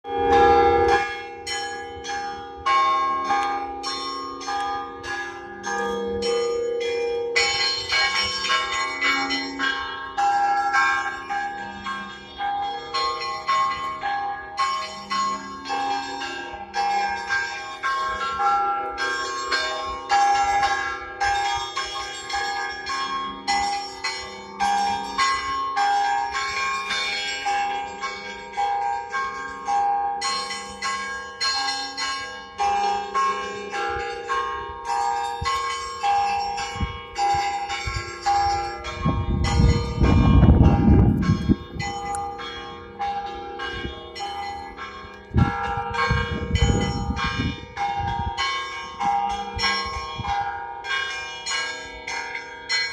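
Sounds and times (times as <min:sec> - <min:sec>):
small high bells ringing rapidly: 0:00.3 - 0:52.9
deep bell tolling: 0:30.2 - 0:52.9.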